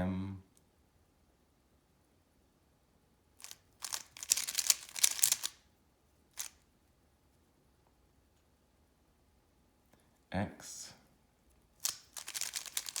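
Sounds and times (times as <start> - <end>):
puzzle cube layers clicking: 3.4 - 5.6, 6.4 - 6.6, 11.8 - 13.0.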